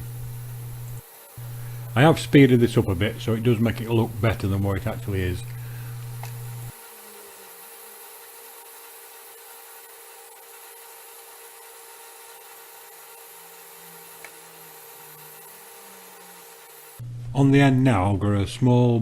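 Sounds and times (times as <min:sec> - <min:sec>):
steady hiss: 0:00.0 - 0:09.3.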